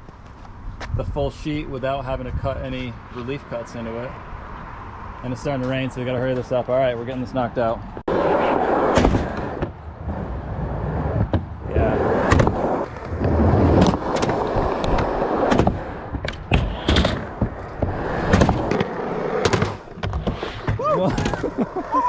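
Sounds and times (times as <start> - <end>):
skateboard wheels rolling: 5.3 - 22.0
skateboard clacks and impacts: 11.0 - 21.7.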